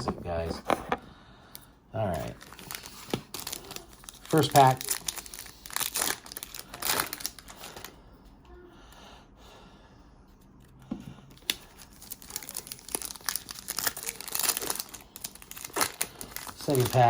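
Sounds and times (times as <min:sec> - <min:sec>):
plastic wrapper tearing and crinkling: 0:02.0 - 0:07.9, 0:11.4 - 0:17.0.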